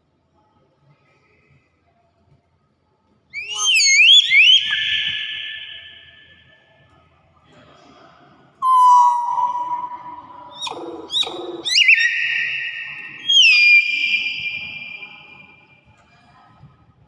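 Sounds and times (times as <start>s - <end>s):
bird whistling: 3.4s - 6.3s, 8.6s - 15.7s.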